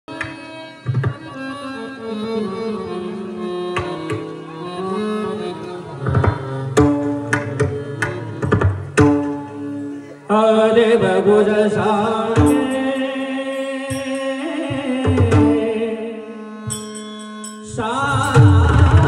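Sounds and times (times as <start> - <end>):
sustained melodic accompaniment: 0.1 - 19.0
hand drum strokes: 16.6 - 19.0.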